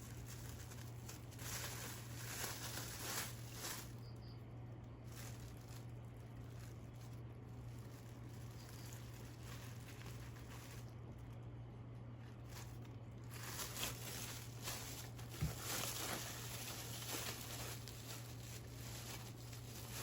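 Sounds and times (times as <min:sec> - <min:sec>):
steady low hum: 0:00.0 - 0:20.0
soft taps and rustling: 0:14.6 - 0:16.2.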